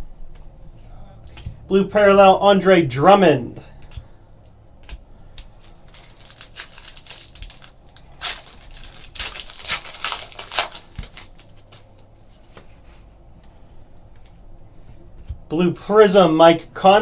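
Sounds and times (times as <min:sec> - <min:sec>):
packaging crinkling and rustling: 0:05.4 - 0:12.8.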